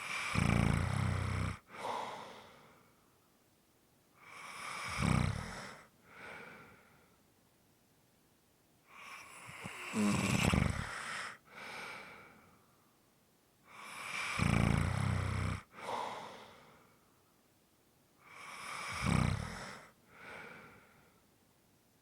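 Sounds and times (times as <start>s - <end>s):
person snoring: 0.0s - 2.7s, 4.2s - 6.6s, 8.9s - 12.2s, 13.7s - 16.7s, 18.2s - 20.8s
soft airy breath: 1.7s - 3.3s, 5.5s - 7.2s, 10.8s - 13.0s, 15.7s - 17.4s, 19.5s - 21.3s.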